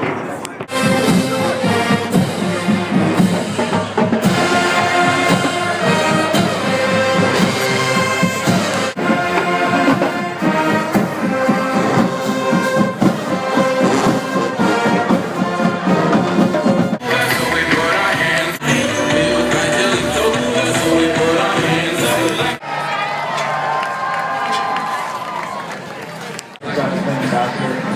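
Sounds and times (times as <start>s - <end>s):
loud music with many instruments: 0.7s - 22.6s.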